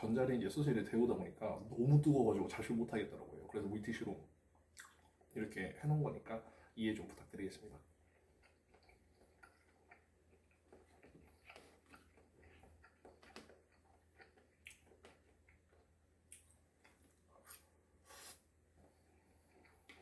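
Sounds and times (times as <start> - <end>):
soft clicks and taps of eating: 8.1 - 17.2, 18.8 - 20.0.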